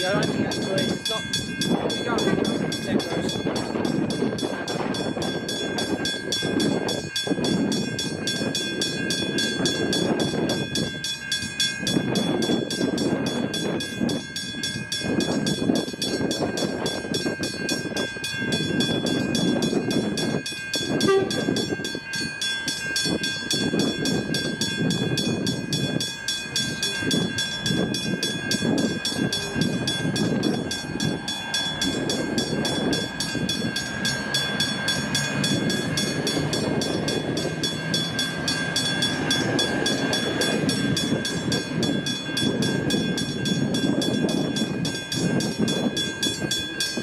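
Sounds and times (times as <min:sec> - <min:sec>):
level crossing bell ringing: 0:00.0 - 0:47.0
train rumbling: 0:00.0 - 0:47.0
brief tone: 0:21.0 - 0:21.6.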